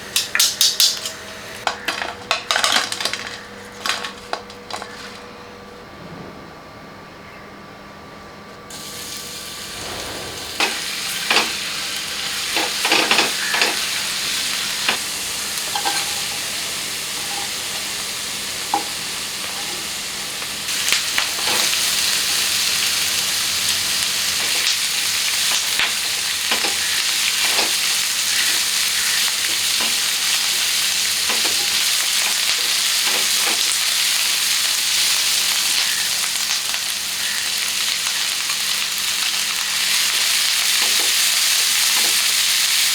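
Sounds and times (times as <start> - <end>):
utensil clinking and scraping: 0.2 - 5.2, 15.7 - 16.5
food sizzling in oil: 8.7 - 42.9.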